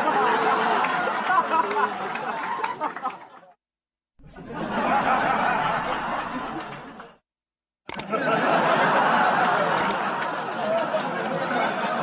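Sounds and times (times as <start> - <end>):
women laughing: 0.0 - 3.4, 4.3 - 7.1.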